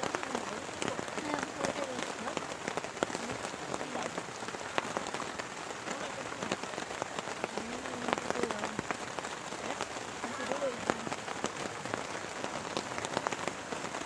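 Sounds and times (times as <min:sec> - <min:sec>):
heavy rain falling: 0:00.0 - 0:14.0
raindrops striking close by: 0:00.0 - 0:14.0.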